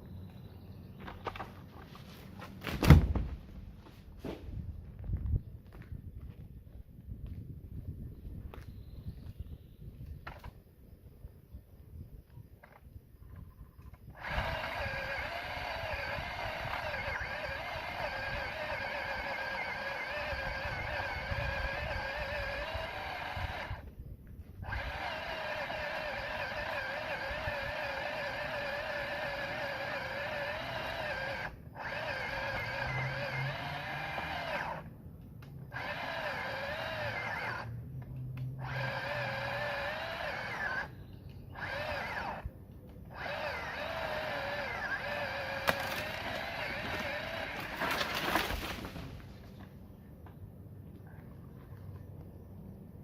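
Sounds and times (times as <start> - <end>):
electric pole saw whining: 13.8 - 49.5.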